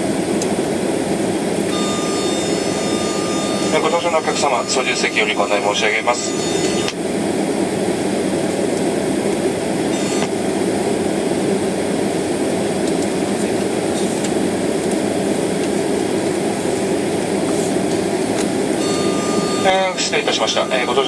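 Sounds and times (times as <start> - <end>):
air conditioning blowing: 0.0 - 21.0
jet engines idling: 0.0 - 21.0
faint high tone: 1.7 - 5.4.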